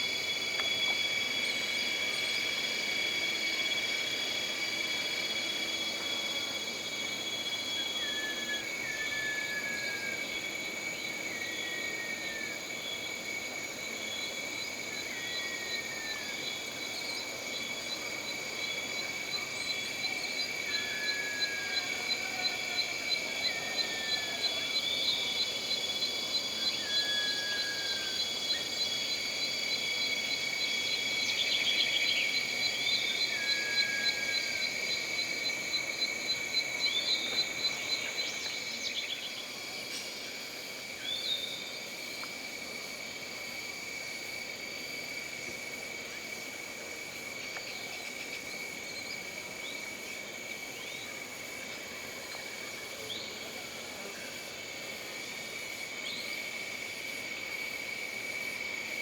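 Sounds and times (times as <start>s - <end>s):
insect chorus shrill tones: 0.0s - 43.0s.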